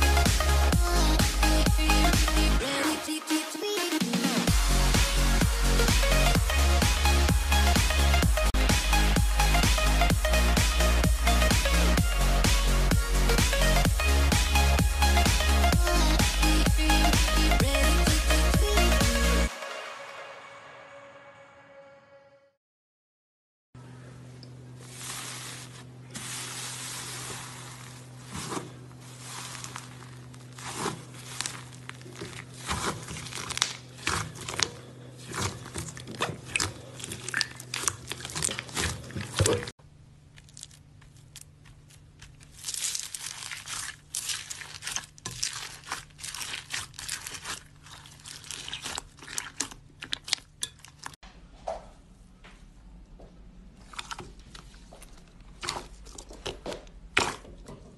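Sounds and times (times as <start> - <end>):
slime crackling and squelching: 24.8 - 51.2, 53.8 - 57.5.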